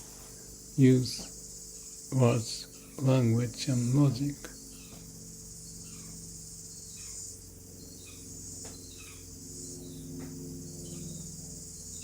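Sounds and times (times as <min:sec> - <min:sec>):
insects chirring: 0:00.0 - 0:12.0
low steady hum: 0:00.0 - 0:12.0.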